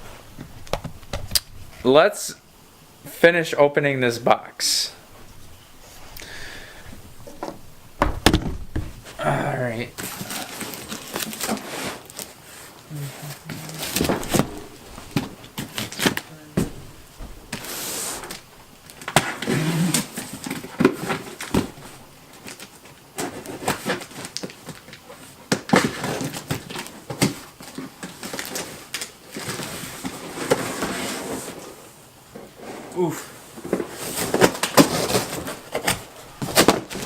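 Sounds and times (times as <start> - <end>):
cardboard rustling and tearing: 10.0 - 31.8, 33.6 - 37.0.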